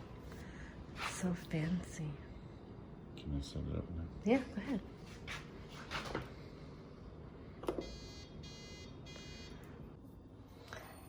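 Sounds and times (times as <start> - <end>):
coffee maker electronic beeps: 7.7 - 9.6.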